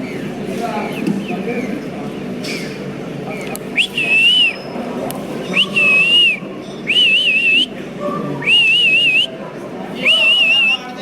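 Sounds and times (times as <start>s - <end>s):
whistled notes: 5.5s - 7.7s, 8.4s - 9.4s.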